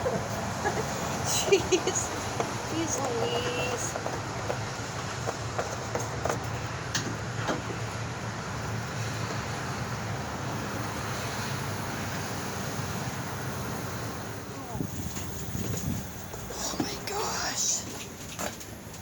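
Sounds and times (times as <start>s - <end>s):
low engine hum: 0.0s - 19.0s
noisy haze: 7.8s - 19.0s.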